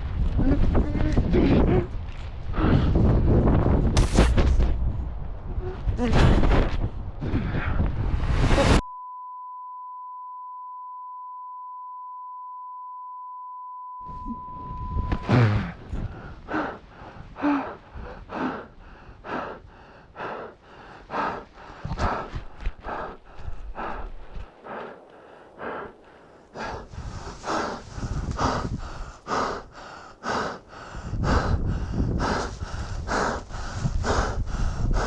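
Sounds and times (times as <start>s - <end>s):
heavy ragged gasping breaths: 0.6s - 3.5s, 15.2s - 35.0s
steady pure tone: 8.2s - 15.3s.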